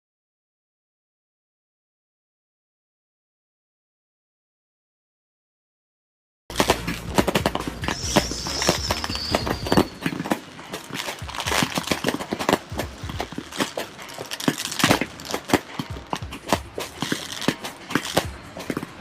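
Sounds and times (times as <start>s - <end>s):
fireworks cracks and pops: 6.5s - 19.0s
falling whistle: 7.8s - 10.4s.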